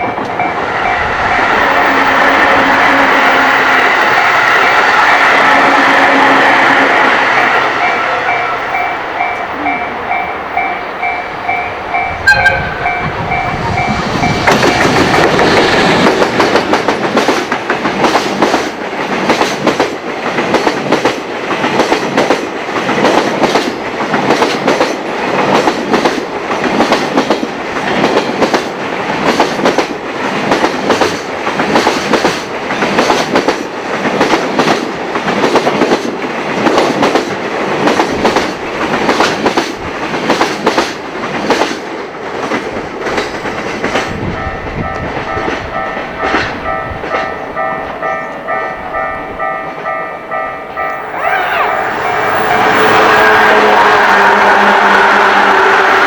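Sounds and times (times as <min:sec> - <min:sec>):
level crossing bell ringing: 0:07.4 - 0:15.0, 0:44.4 - 0:53.0
train wheels clattering: 0:11.0 - 0:54.4.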